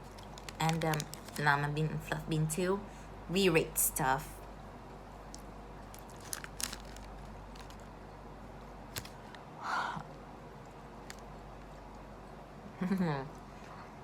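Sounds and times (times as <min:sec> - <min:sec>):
person chewing chocolate: 0:00.0 - 0:01.4.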